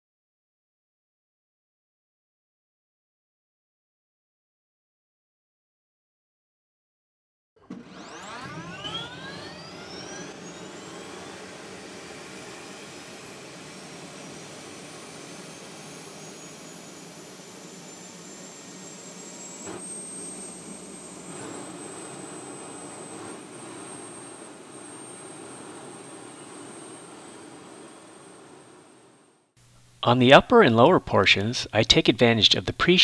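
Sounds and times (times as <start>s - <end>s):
jet turbine whine: 7.6s - 29.7s.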